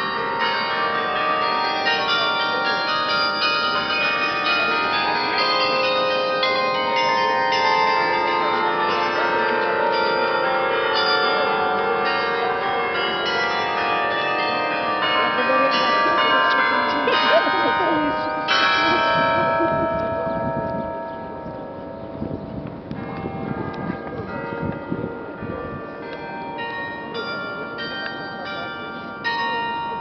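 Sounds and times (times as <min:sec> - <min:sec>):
church bells pealing: 0:00.0 - 0:30.0.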